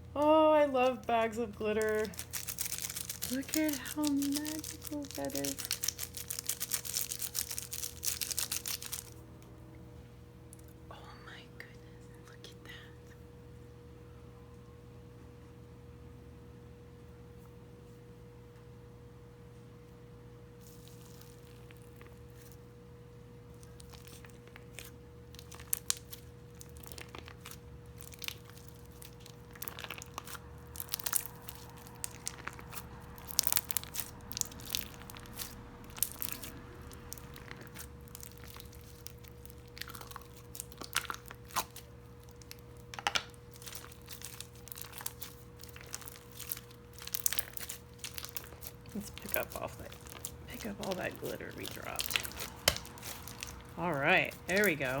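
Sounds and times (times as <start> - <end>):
faint electrical hum: 0.0 - 55.0
hands squishing textured slime: 0.2 - 9.2, 23.5 - 55.0
clicks and crackles of slime: 1.6 - 9.2, 20.6 - 22.6, 23.5 - 55.0.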